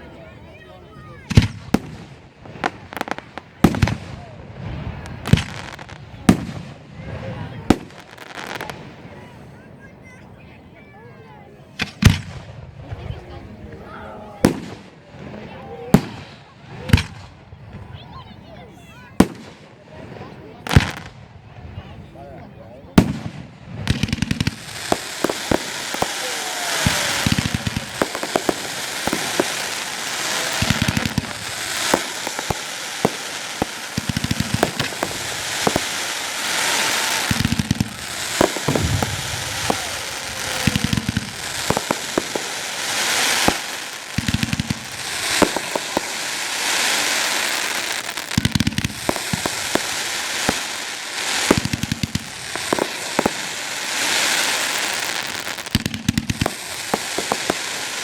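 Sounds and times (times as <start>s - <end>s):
fireworks popping and crackling: 1.0s - 9.6s, 11.8s - 18.3s, 19.0s - 21.9s, 22.9s - 58.0s
fireworks hissing: 23.0s - 58.0s.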